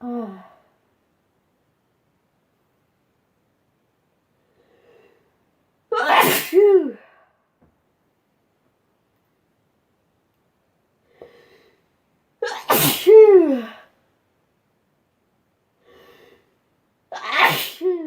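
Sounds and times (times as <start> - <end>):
person sneezing: 5.9 - 7.1, 12.4 - 13.8, 17.2 - 18.0.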